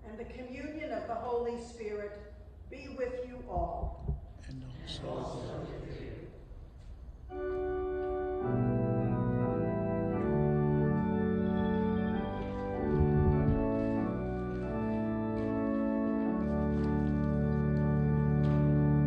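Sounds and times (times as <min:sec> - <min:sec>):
church organ chords: 0:07.3 - 0:19.0
low organ bass line: 0:07.3 - 0:19.0.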